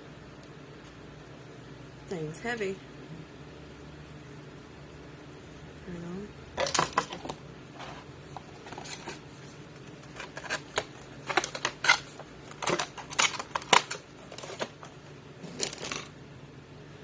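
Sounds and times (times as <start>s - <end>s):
faint steady hum: 0.0s - 17.0s
plastic packaging crinkling: 6.6s - 16.1s.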